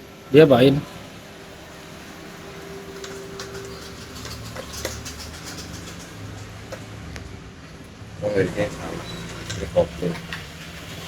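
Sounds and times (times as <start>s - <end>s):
small metal parts clicking: 2.9s - 6.9s.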